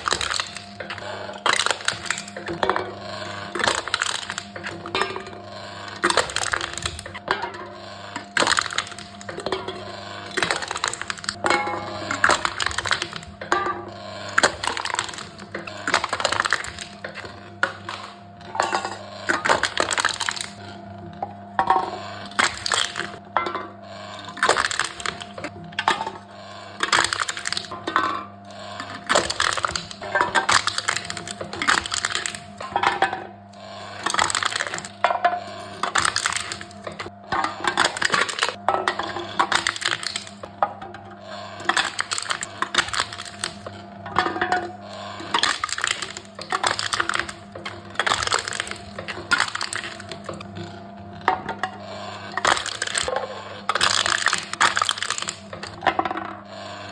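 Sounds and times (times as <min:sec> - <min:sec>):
drink cans being crushed: 0:00.0 - 0:05.2, 0:06.0 - 0:07.3, 0:08.2 - 0:13.6, 0:14.3 - 0:20.6, 0:22.3 - 0:23.2, 0:24.2 - 0:26.1, 0:26.8 - 0:27.8, 0:28.8 - 0:33.0, 0:34.0 - 0:35.1, 0:35.7 - 0:40.5, 0:41.6 - 0:44.6, 0:45.3 - 0:50.6, 0:52.3 - 0:56.3.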